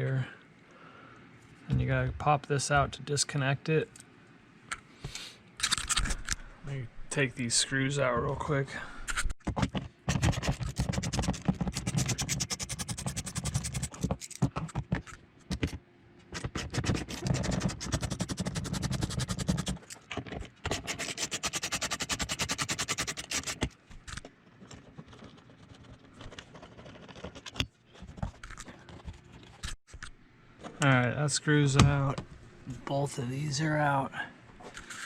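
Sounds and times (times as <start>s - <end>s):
hand tool rapid clicking: 10.1s - 14.4s, 16.4s - 19.9s, 20.7s - 23.7s.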